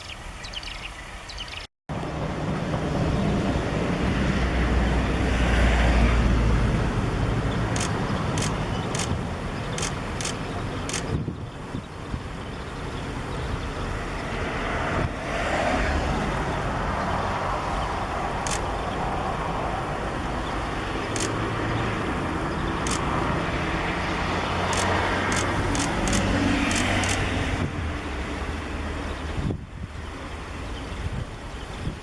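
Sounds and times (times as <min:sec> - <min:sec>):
road traffic rumble: 0:00.0 - 0:32.0
short high-pitched ticks: 0:07.8 - 0:11.2, 0:18.4 - 0:18.7, 0:21.1 - 0:21.4, 0:22.9 - 0:23.1, 0:24.7 - 0:27.2.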